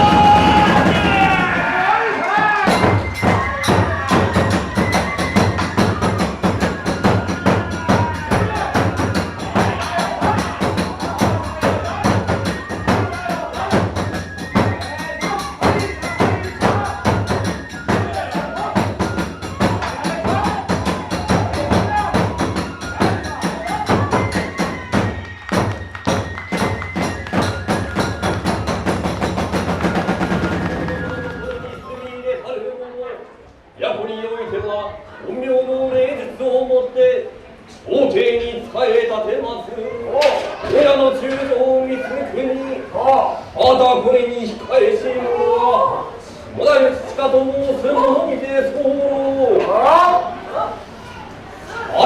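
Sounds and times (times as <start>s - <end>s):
drum strikes: 0.0s - 31.8s
bamboo flute melody: 0.0s - 32.4s.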